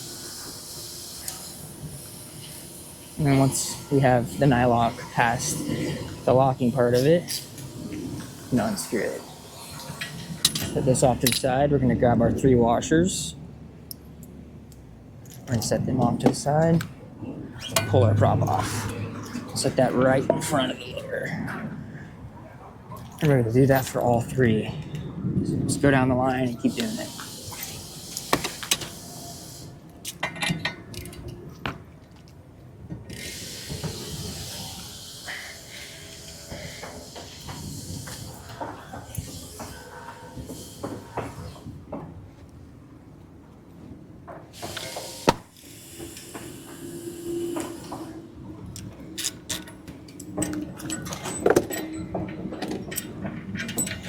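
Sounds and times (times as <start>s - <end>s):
hiss: 0.0s - 10.8s, 26.6s - 29.8s, 33.2s - 41.8s, 44.5s - 48.3s.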